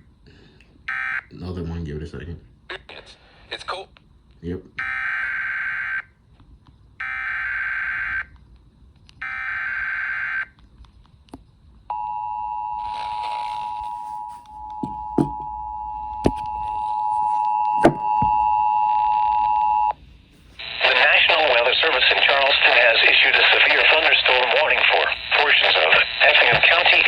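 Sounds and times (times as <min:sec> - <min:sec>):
sharp knocks: 0:14.8 - 0:15.5, 0:17.8 - 0:18.4.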